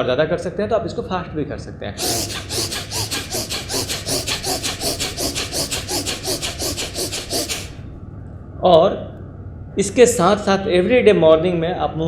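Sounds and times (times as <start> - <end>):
rapid forceful nasal breathing: 2.0 - 8.0.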